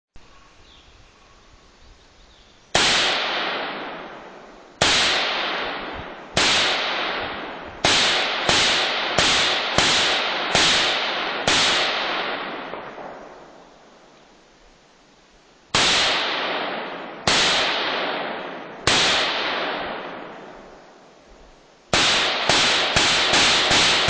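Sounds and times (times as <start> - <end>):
rifle shots with echoing tail: 2.7 - 13.9, 15.7 - 21.1, 21.9 - 24.0.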